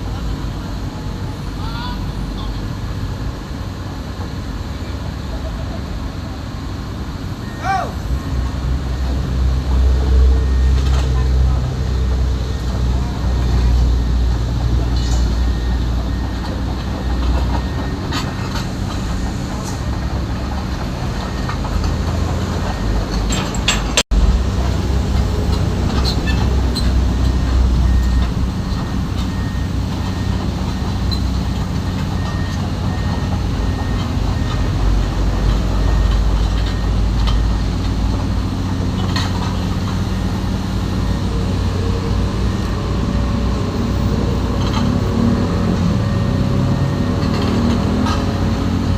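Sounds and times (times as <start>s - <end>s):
diesel machinery humming: 0.0s - 48.9s
metallic clanks and clicks: 22.7s - 24.0s.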